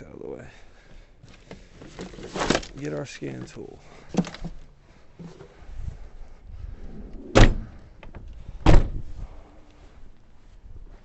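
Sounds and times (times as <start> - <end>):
handling and shuffling noise: 1.2 - 6.4, 9.6 - 11.0
truck doors slamming: 7.2 - 7.8, 8.6 - 9.0.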